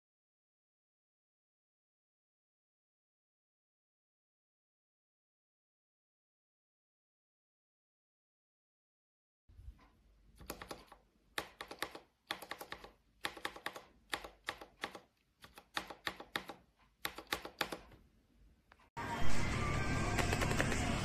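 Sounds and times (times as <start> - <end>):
mechanical keyboard keys clicking: 10.4 - 18.0
music: 19.0 - 21.0.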